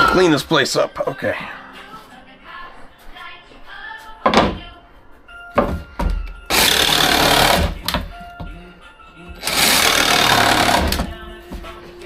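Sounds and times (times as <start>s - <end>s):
handheld power tool running: 6.5s - 7.8s, 9.4s - 11.1s.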